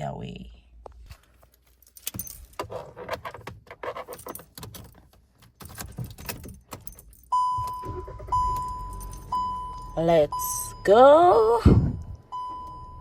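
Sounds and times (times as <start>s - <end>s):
keys jangling: 1.6s - 7.8s, 8.9s - 9.4s
car warning chime: 7.1s - 13.0s.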